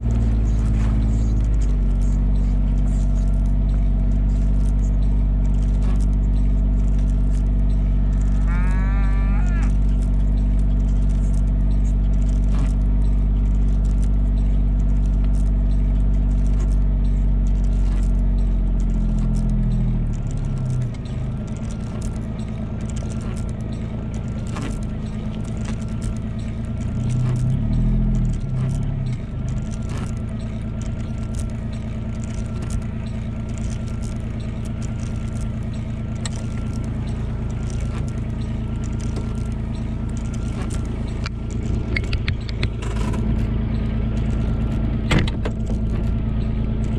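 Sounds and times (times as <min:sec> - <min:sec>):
vehicle engine running: 0:00.0 - 0:46.9
knocks and clatter: 0:09.7 - 0:46.9.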